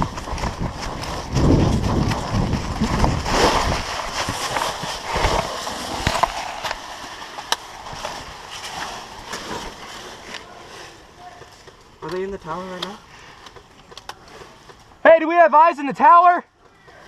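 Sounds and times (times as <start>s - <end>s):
hurried footsteps: 0.0s - 10.6s
gear rustling: 0.0s - 15.0s.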